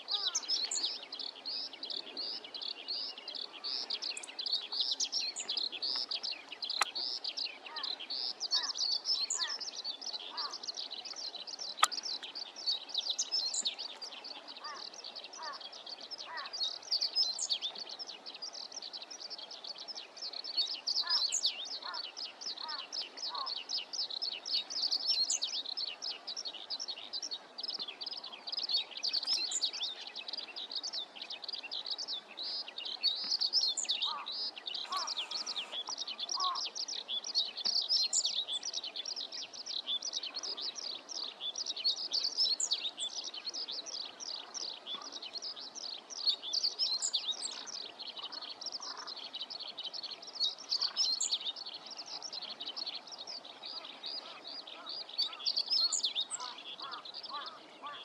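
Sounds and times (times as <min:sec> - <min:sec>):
lower bird calls: 0:00.0 - 0:01.0, 0:32.6 - 0:36.7, 0:53.7 - 0:58.0
small birds chirping: 0:00.0 - 0:58.0.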